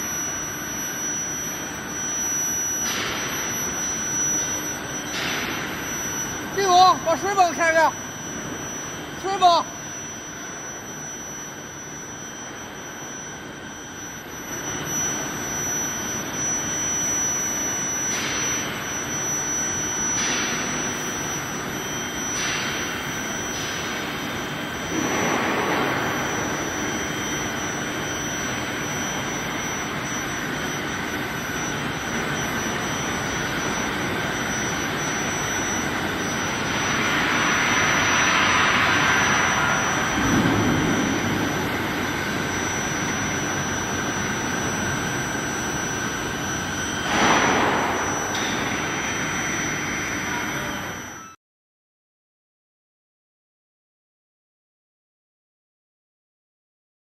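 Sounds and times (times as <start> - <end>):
high-pitched whine: 0.0 - 51.4
rushing machine noise: 20.0 - 51.1.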